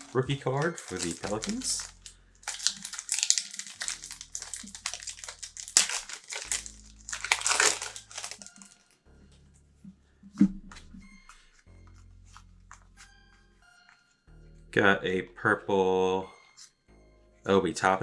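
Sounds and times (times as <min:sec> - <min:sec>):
plastic wrapper crinkling: 0:00.0 - 0:09.0.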